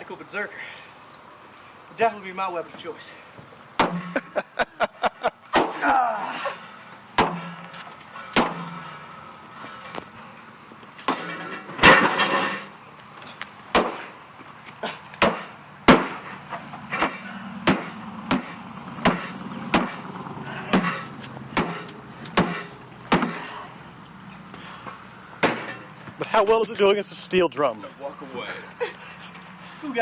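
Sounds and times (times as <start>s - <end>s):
blade striking metal tank: 7.2s - 7.6s, 8.4s - 9.0s, 11.1s - 12.7s, 16.9s - 20.0s, 20.7s - 23.5s.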